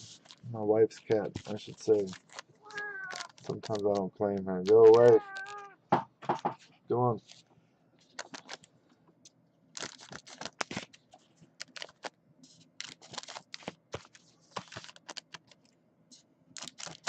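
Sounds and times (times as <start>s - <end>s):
card pack wrappers tearing: 1.0s - 5.7s, 8.0s - 8.7s, 9.8s - 11.0s, 11.6s - 12.1s, 12.8s - 15.7s, 16.6s - 17.0s.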